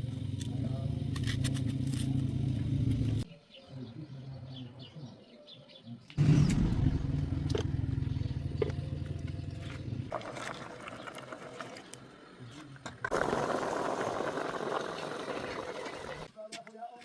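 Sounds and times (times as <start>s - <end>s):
engine running steadily: 0.0s - 3.2s, 6.2s - 10.1s
birds chirping: 0.1s - 16.3s.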